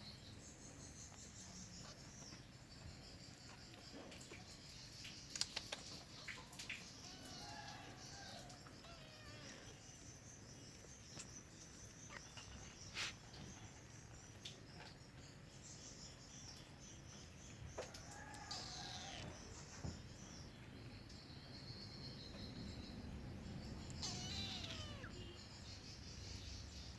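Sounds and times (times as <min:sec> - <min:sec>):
insects chirring: 0:00.0 - 0:26.9
kitten meowing faintly: 0:08.8 - 0:09.8, 0:18.4 - 0:19.4, 0:23.8 - 0:25.5.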